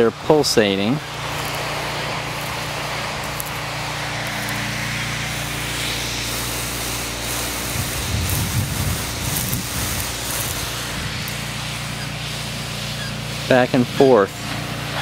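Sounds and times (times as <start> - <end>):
sprinklers spraying water: 0.0 - 15.0
steady low hum: 0.0 - 15.0.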